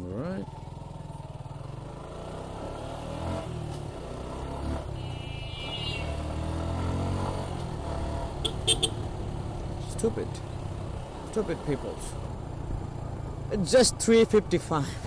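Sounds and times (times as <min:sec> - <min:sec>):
road and wind noise: 0:00.0 - 0:15.0
motorcycle engine running: 0:00.1 - 0:14.8.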